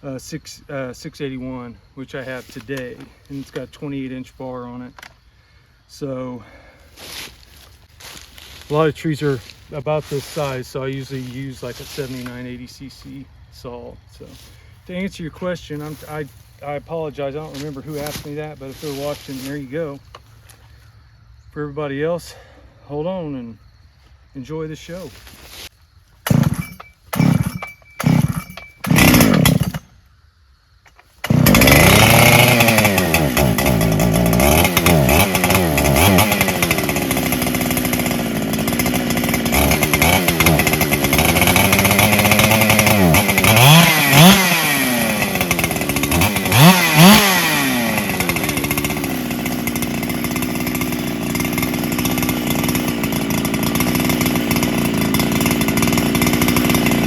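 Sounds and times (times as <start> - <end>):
chainsaw engine revving: 8.0 - 13.2, 14.1 - 20.5, 26.2 - 29.9, 31.0 - 57.0
starter cord pulls: 26.2 - 29.9, 30.9 - 57.0.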